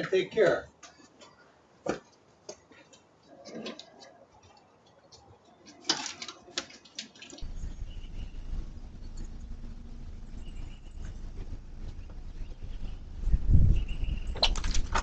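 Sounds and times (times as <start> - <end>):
faint hum: 7.4 - 14.3
low background rumble: 7.4 - 15.0.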